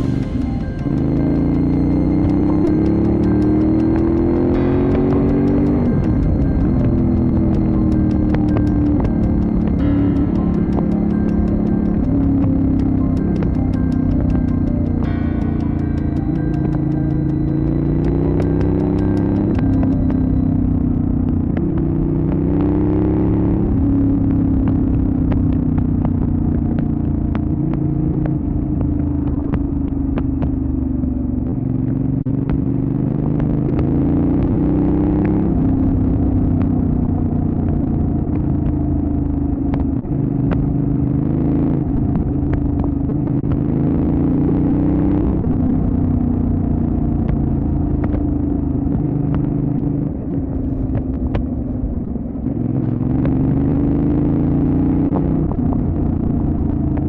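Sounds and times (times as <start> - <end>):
sharp ticks: 0.0 - 30.7
motorcycle engine running: 0.0 - 57.0.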